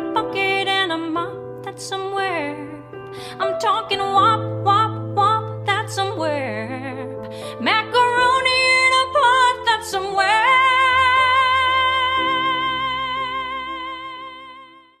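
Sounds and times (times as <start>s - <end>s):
woman singing with vibrato: 3.4s - 15.0s.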